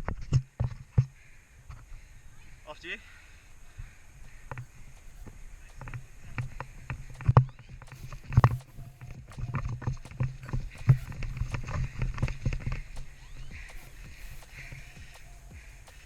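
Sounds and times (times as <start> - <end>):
footsteps: 4.3 - 16.0.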